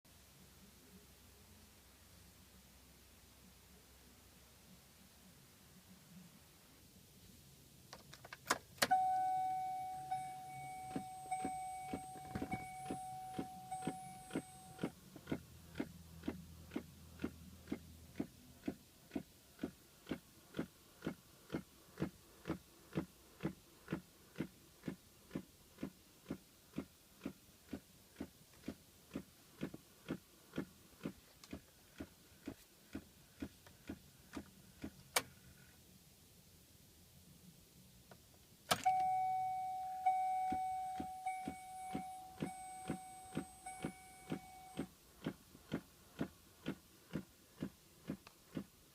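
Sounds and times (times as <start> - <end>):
steady tone: 8.9 - 14.9, 38.9 - 44.9.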